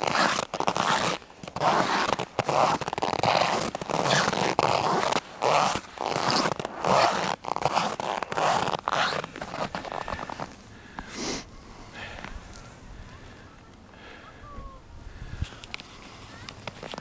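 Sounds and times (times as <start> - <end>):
footsteps crunching on snow: 0.0 - 11.2.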